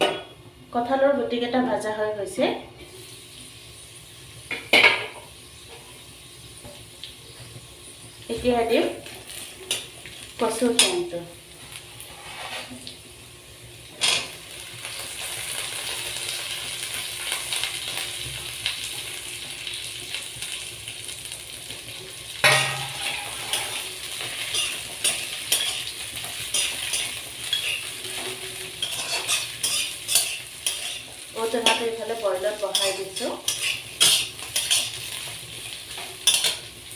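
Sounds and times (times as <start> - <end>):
vegetables sizzling in hot oil: 2.8 - 36.9
spatula scraping a pan: 12.0 - 12.8, 22.4 - 31.8, 32.7 - 35.0, 35.6 - 36.7
clatter in pan: 22.4 - 25.9, 36.0 - 36.7.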